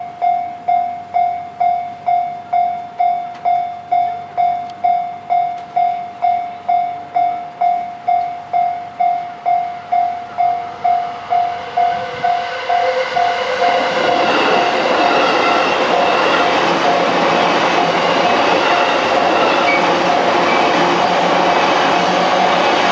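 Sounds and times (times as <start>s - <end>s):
electric train rumble and whine: 0.0s - 22.9s
level-crossing warning bell ringing: 0.0s - 22.9s.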